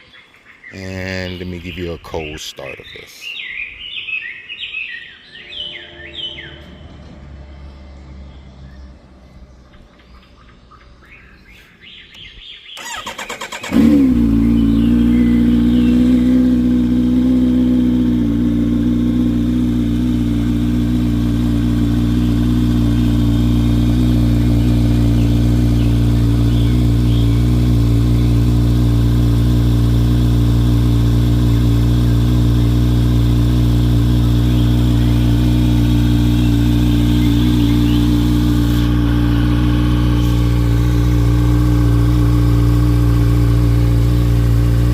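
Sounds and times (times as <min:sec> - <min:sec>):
starter motor cranking: 0:12.8 - 0:14.4
motorcycle engine idling: 0:12.8 - 0:44.9.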